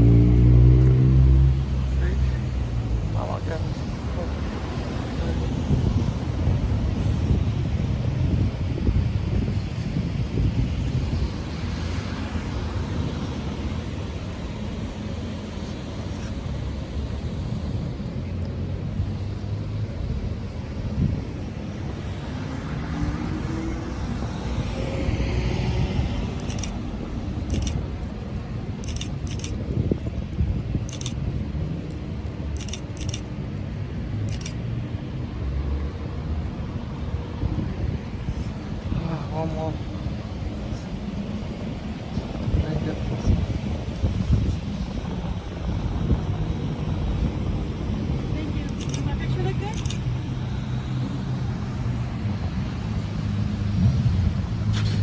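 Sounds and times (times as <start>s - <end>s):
vehicle rumble: 0.0s - 55.0s
sharp clicks: 26.4s - 26.8s, 27.5s - 27.8s, 28.8s - 29.6s, 30.9s - 31.2s, 31.9s - 33.3s, 48.7s - 49.1s, 49.7s - 50.1s.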